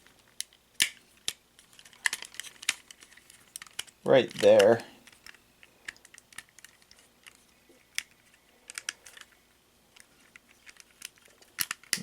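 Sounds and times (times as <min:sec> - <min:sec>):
plastic toy parts clicking: 0:00.1 - 0:12.0.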